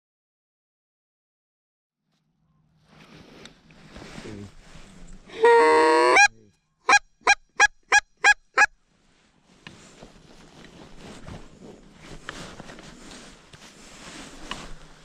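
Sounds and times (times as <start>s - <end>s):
goose call honking: 5.4s - 6.3s.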